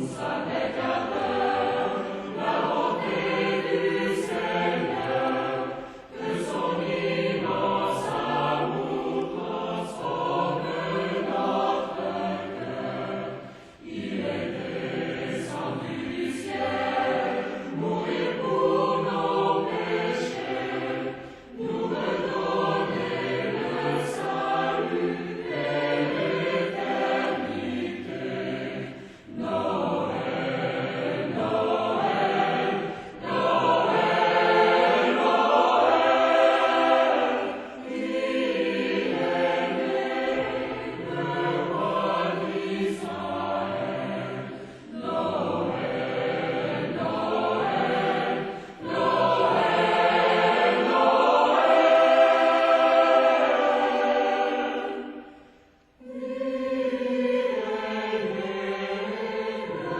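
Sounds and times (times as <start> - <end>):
choir singing: 0.0 - 59.9.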